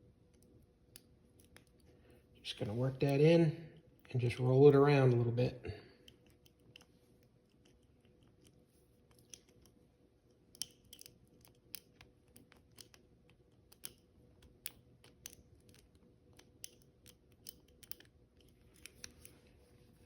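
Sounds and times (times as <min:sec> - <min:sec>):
lock pick clicking in a lock: 0:06.0 - 0:19.4.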